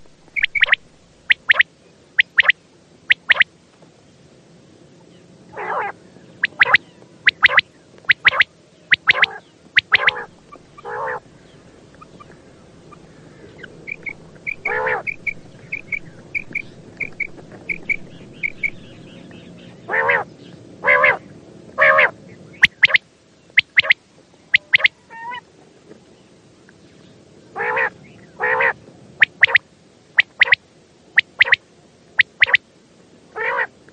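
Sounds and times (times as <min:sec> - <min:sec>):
quail calling: 0:00.0 - 0:03.5, 0:05.5 - 0:23.0, 0:23.6 - 0:25.4, 0:27.6 - 0:29.6, 0:30.2 - 0:30.6, 0:31.2 - 0:31.6, 0:32.2 - 0:32.6, 0:33.4 - 0:33.7
soft repeated peeps: 0:00.0 - 0:03.5, 0:06.4 - 0:19.5, 0:22.6 - 0:25.0, 0:29.2 - 0:29.6, 0:30.2 - 0:31.6, 0:32.2 - 0:32.6.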